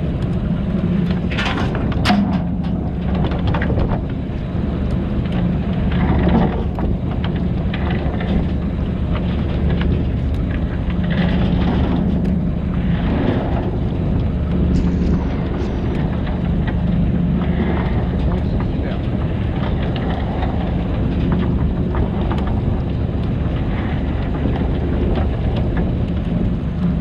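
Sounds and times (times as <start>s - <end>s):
boat engine humming: 0.0s - 27.0s
rushing noise: 10.8s - 25.5s.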